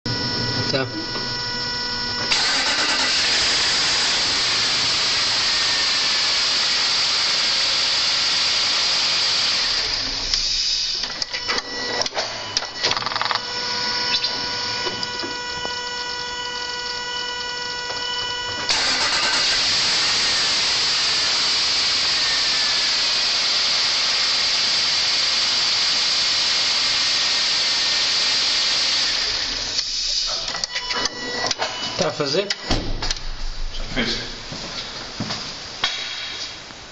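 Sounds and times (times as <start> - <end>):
steady whine: 0.0 - 36.9
engine cranking on starter: 2.1 - 11.4, 18.6 - 25.2.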